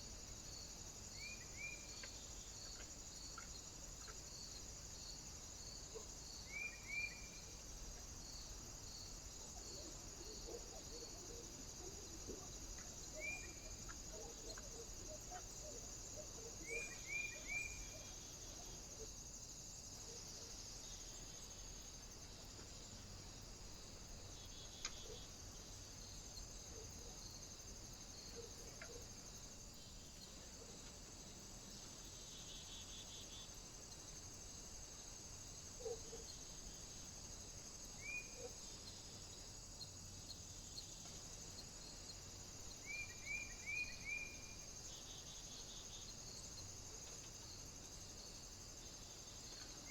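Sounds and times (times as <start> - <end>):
faint ticks: 1.9 - 4.3, 13.8 - 15.6, 24.6 - 25.3, 28.3 - 29.1.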